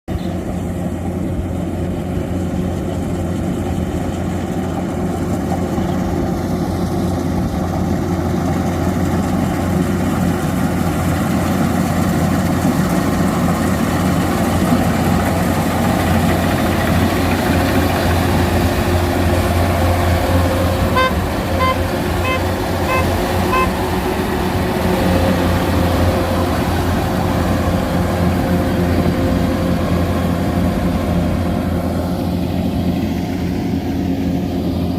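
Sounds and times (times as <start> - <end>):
combine harvester diesel engine: 0.1 - 34.9
short high beeps: 21.0 - 23.8.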